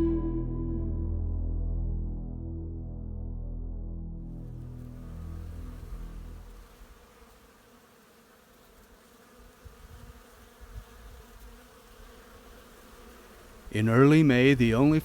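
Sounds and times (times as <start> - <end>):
soft background music: 0.0 - 6.4
bees buzzing: 4.5 - 15.0.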